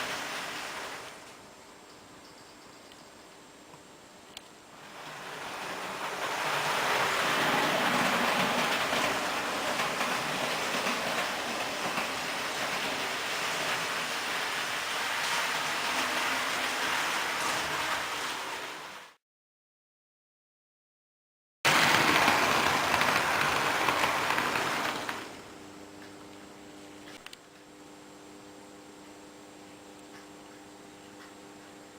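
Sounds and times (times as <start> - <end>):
model train rolling rattle: 4.8 - 19.1, 21.7 - 25.4.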